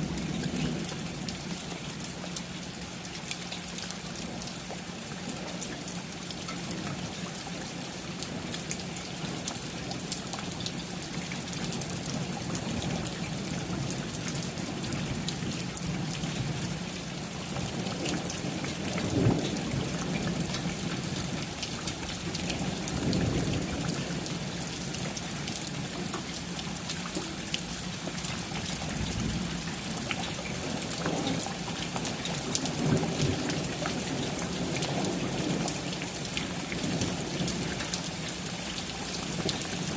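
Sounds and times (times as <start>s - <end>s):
steady rain with ticking drops: 0.0s - 39.9s
low thunder rumbling: 11.1s - 26.2s, 27.3s - 38.4s.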